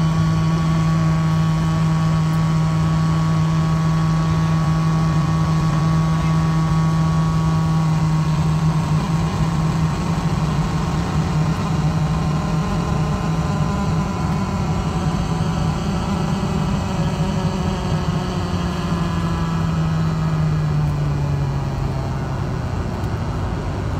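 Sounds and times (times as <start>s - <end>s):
loudspeaker low buzz: 0.0s - 22.4s
aircraft cabin background noise: 3.4s - 18.0s.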